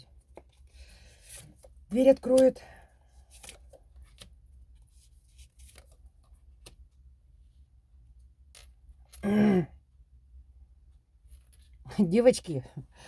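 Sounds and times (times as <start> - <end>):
cards clicking and rustling: 3.2 - 4.4.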